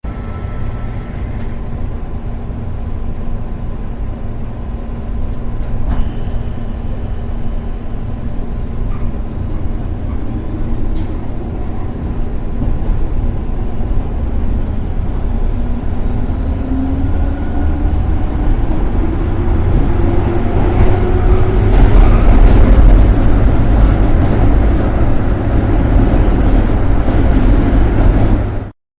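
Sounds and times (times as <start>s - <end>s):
metro train rumbling: 0.0s - 28.8s
train motor whine: 0.1s - 2.0s.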